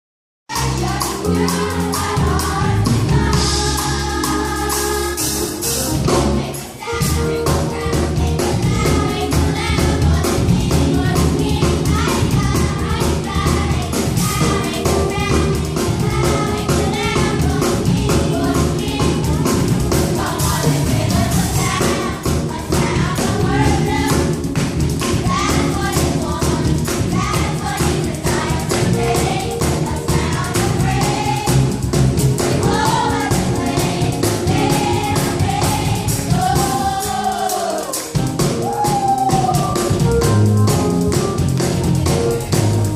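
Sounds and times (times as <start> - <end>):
choir singing a gospel song: 0.5 - 40.7, 41.3 - 42.9
live band playing: 0.5 - 42.9
percussion steady beat: 7.0 - 42.9.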